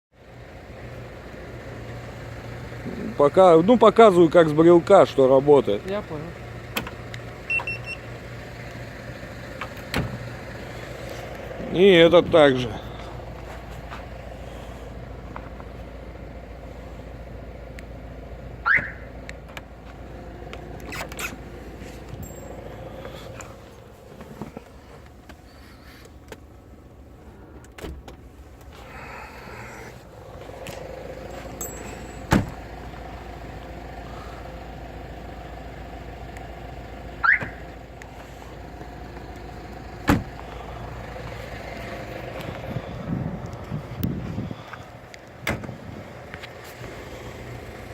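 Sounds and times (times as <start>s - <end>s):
car alarm chirp: 7.5s - 8.0s, 18.6s - 19.1s, 37.2s - 37.6s.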